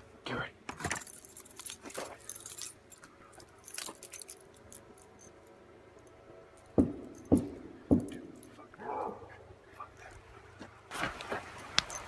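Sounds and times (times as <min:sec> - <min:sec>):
keys jingling: 0:00.8 - 0:08.6, 0:11.6 - 0:12.0
loud sharp knocks: 0:06.8 - 0:08.2.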